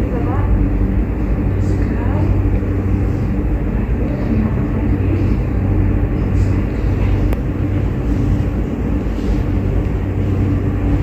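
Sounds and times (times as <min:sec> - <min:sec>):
steady mechanical hum: 0:00.0 - 0:11.0.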